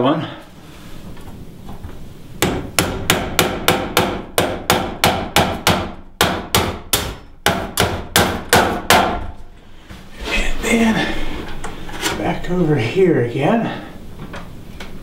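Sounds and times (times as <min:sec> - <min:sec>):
hammer striking nail into wood: 0:02.4 - 0:09.3.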